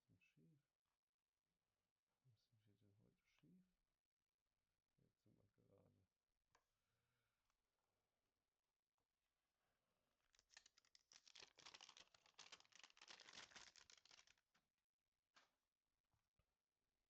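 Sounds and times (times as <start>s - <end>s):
packaging crinkling and tearing: 10.3s - 14.4s.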